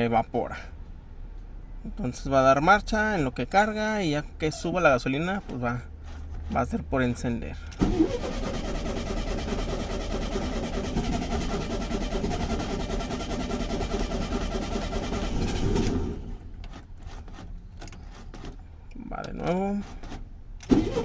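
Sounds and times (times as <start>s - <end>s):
starter motor cranking engine: 7.6s - 21.0s.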